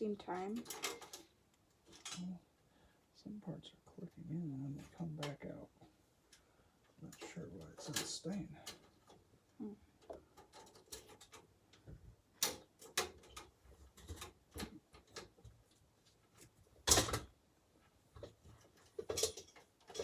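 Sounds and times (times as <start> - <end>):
sheet metal clicks and snaps: 0.6 - 1.3, 10.4 - 11.5, 12.4 - 15.4.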